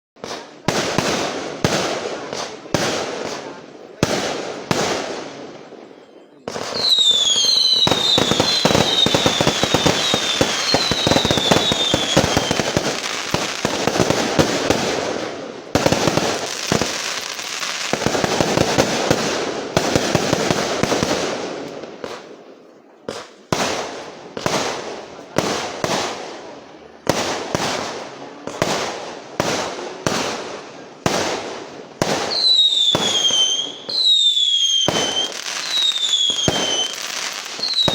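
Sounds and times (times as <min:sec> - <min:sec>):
loud firework bangs: 0:00.2 - 0:05.5, 0:06.4 - 0:22.3, 0:27.0 - 0:37.9
firecrackers crackling: 0:00.2 - 0:05.7, 0:06.4 - 0:22.3, 0:23.0 - 0:37.9
fireworks whistling: 0:06.4 - 0:20.1, 0:32.1 - 0:37.9.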